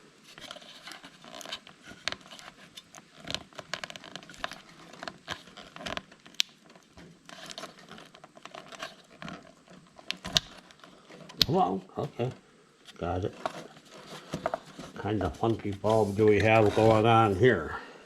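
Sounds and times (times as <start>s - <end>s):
small clicks taps and scrapes: 0.3s - 11.5s.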